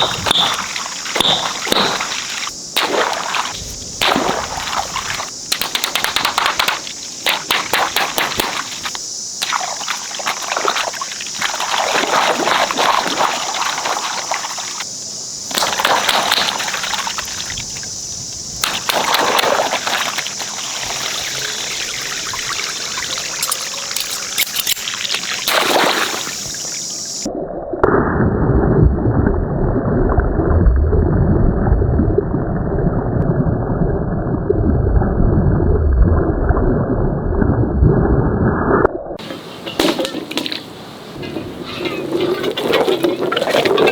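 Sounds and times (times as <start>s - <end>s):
water running and splashing: 0.0s - 14.9s, 15.5s - 27.3s, 41.2s - 43.9s
sharp clicks: 5.5s - 9.0s.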